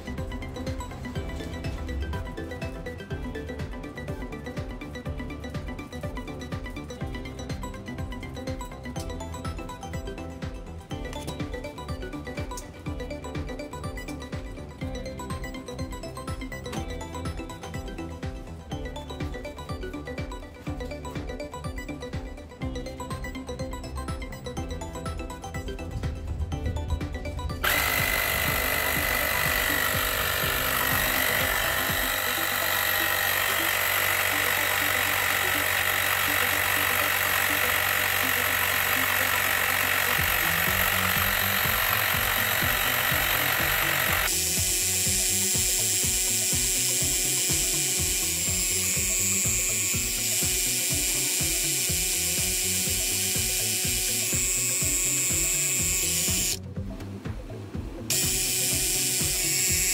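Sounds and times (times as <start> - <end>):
music: 0.0 - 59.9
air compressor buzzing: 27.6 - 56.6, 58.1 - 59.9
chugging with high hiss: 27.6 - 56.6, 58.1 - 59.9.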